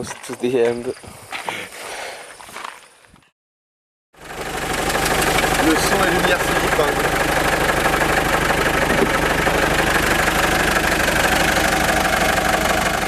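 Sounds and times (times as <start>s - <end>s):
vehicle engine running: 4.2s - 13.0s.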